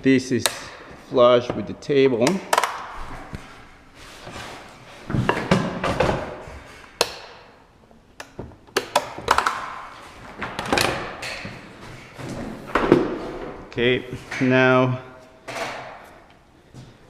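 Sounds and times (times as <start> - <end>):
wood scraping: 3.0 - 6.9.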